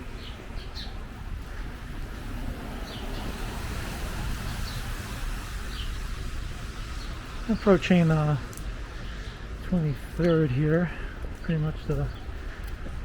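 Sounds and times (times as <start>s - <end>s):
traffic: 0.0s - 13.0s
tyres hissing on wet road: 1.0s - 11.2s.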